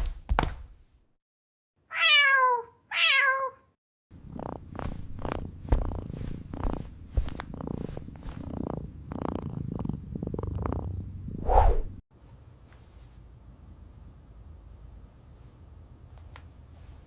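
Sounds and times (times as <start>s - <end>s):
cat meowing: 1.9s - 3.7s
cat purring: 4.2s - 11.4s.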